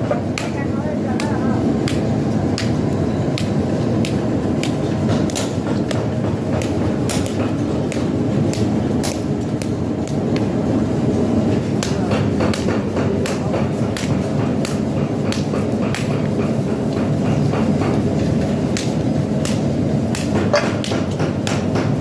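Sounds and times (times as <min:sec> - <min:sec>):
workshop machinery din: 0:00.0 - 0:22.0
hammer striking metal: 0:03.4 - 0:10.2, 0:11.8 - 0:18.0, 0:18.8 - 0:22.0.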